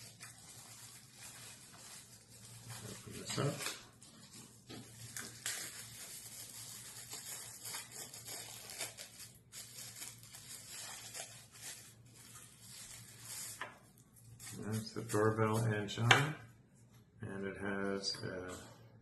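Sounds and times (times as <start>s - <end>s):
packaging tearing: 0.0s - 13.6s
packaging rustling and crinkling: 0.0s - 16.0s.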